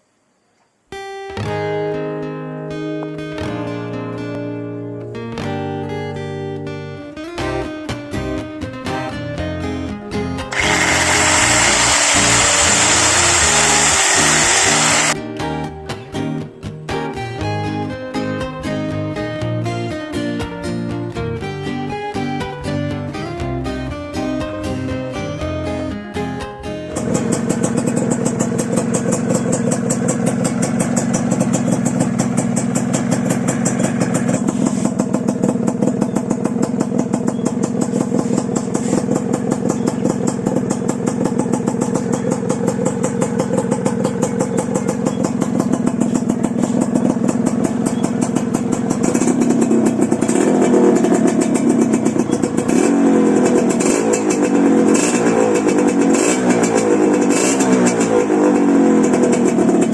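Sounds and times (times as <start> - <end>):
two-stroke motorcycle engine revving: 10.5 - 15.2, 26.9 - 59.9.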